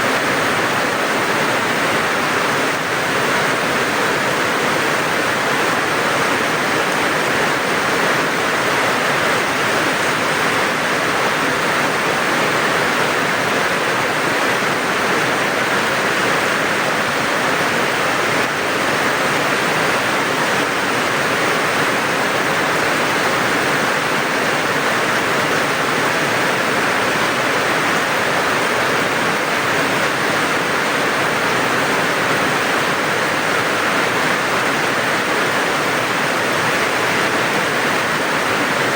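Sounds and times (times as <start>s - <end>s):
heavy rain: 0.0s - 38.9s.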